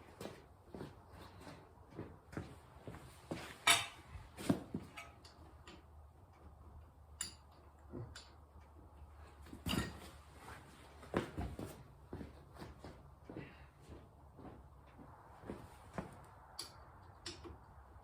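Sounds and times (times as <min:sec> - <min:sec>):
metal hand tools clinking: 0:03.6 - 0:04.1, 0:04.9 - 0:05.9.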